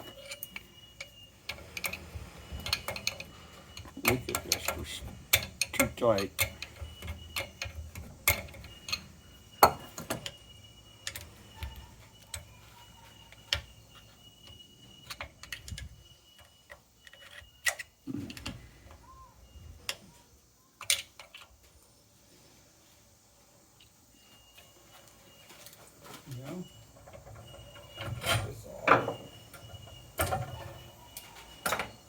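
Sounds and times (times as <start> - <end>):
metal parts clicking and knocking: 0.0 - 18.6, 20.8 - 21.6.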